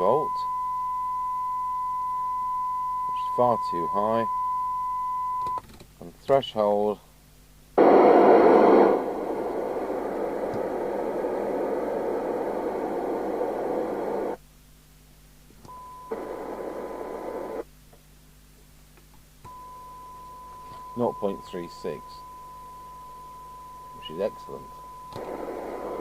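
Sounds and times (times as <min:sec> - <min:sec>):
steady test tone: 0:00.0 - 0:05.5, 0:19.5 - 0:26.0
radio speaker hissing: 0:07.8 - 0:14.4, 0:15.7 - 0:17.7, 0:23.9 - 0:26.0.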